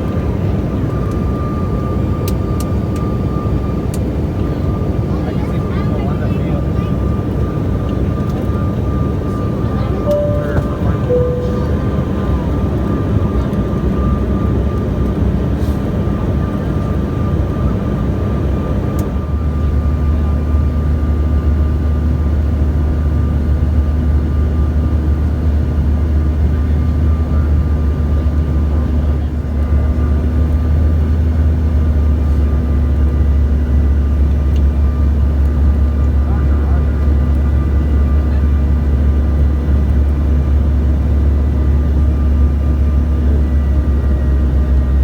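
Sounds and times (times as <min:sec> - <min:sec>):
jet engine and airflow rumble: 0:00.0 - 0:45.0
faint whine: 0:09.8 - 0:14.5
low drone: 0:10.1 - 0:13.4.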